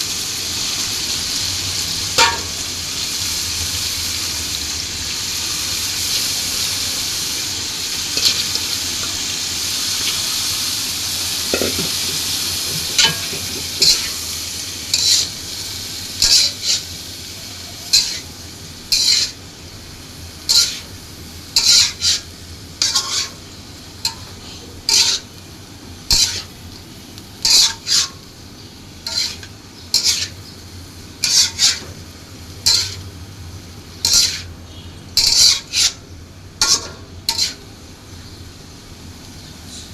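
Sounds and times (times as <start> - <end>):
vegetables sizzling in frying pan: 0.0 - 39.9
spatula scraping and stirring: 8.2 - 9.2, 11.5 - 14.2, 14.9 - 15.4, 16.2 - 16.9, 17.8 - 18.3, 18.9 - 19.4, 20.5 - 21.0, 21.6 - 23.4, 24.0 - 25.3, 26.0 - 26.5, 27.4 - 28.2, 29.0 - 30.4, 31.2 - 32.0, 32.6 - 33.1, 34.0 - 34.5, 35.2 - 36.0, 36.6 - 37.6.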